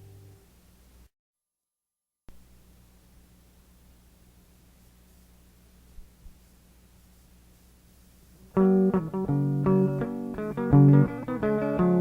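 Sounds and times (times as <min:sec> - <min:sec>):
guitar music with bass: 0:08.4 - 0:12.0.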